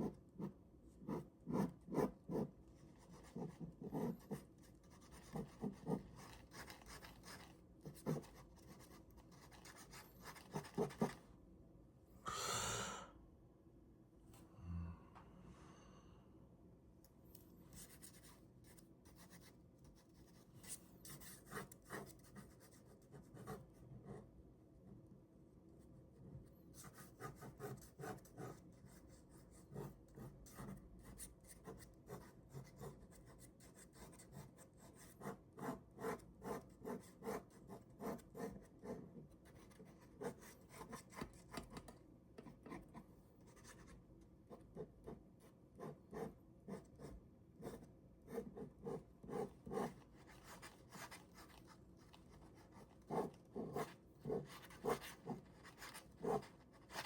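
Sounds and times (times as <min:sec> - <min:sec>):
pen scratching on paper: 0:00.0 - 0:11.2, 0:17.8 - 0:24.2, 0:26.8 - 0:41.9, 0:45.8 - 0:57.0.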